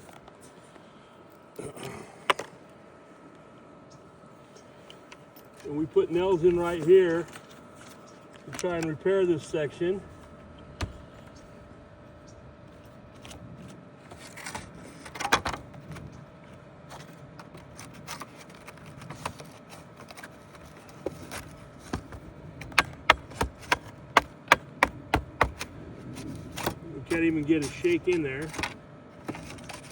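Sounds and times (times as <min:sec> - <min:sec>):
scraping rustle: 0:13.1 - 0:16.0, 0:26.0 - 0:29.9.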